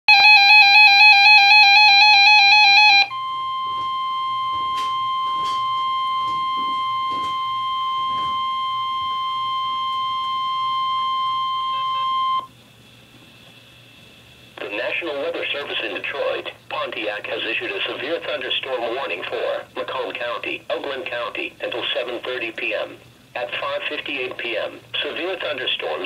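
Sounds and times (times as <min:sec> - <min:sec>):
steady high-pitched alarm tone: 0:00.1 - 0:12.5.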